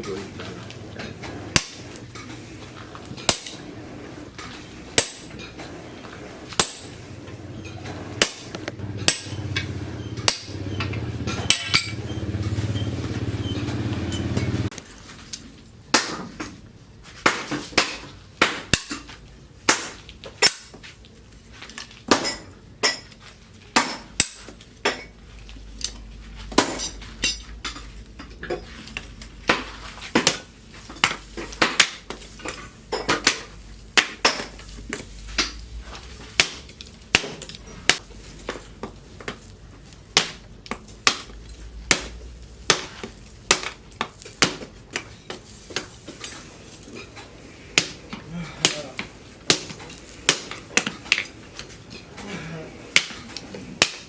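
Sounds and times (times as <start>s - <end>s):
hammer striking steel on anvil: 1.5s - 2.2s, 3.2s - 3.9s, 5.0s - 5.6s, 6.5s - 7.2s, 8.2s - 12.2s.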